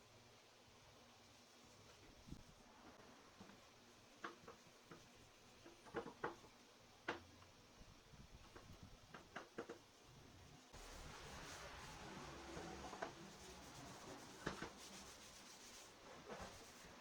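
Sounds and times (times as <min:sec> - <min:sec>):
faint light clicks and knocks: 0:04.2 - 0:07.6, 0:08.4 - 0:09.9.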